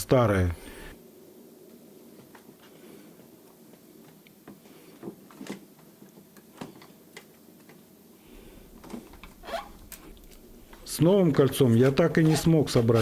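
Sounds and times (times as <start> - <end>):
faint clicks and taps: 3.5 - 7.8.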